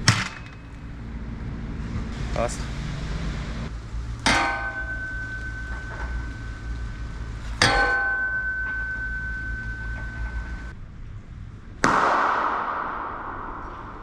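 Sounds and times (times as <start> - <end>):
metal strikes with ringing: 4.2 - 10.7, 11.8 - 14.0.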